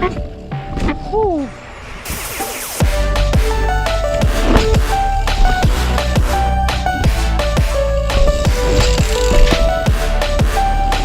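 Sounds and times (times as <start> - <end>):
electronic music with driving beat: 2.3 - 11.0.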